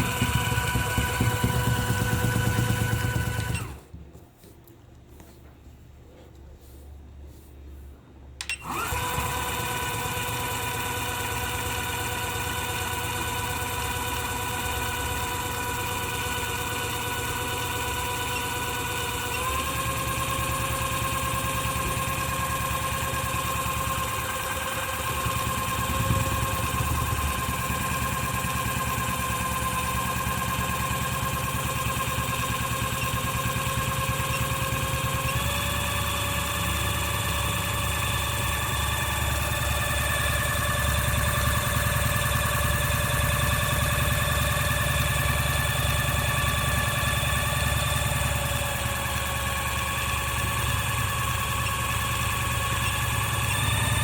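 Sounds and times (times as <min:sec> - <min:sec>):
small electric motor whining: 0:13.9 - 0:31.2.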